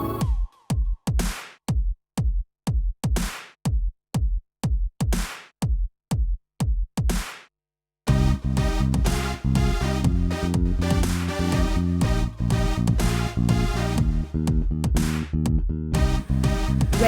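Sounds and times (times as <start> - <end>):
electronic music with drum machine: 0.0 - 0.5, 8.1 - 15.2, 16.0 - 17.0.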